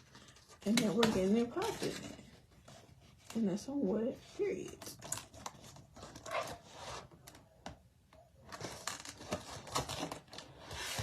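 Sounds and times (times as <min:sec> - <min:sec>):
packaging rustling: 0:08.4 - 0:11.0.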